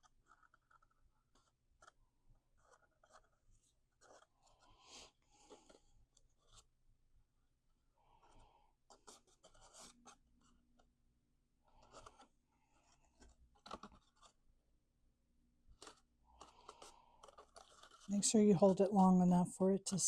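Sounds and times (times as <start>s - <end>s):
cardstock rustling and tapping: 2.6s - 3.4s, 4.0s - 4.3s, 13.1s - 14.4s, 15.7s - 18.1s.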